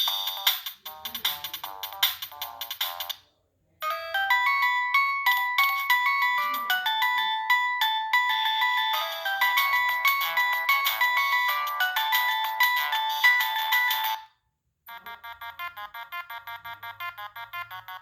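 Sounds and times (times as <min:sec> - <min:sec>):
phone ringtone melody: 0:03.8 - 0:14.3, 0:14.9 - 0:18.0.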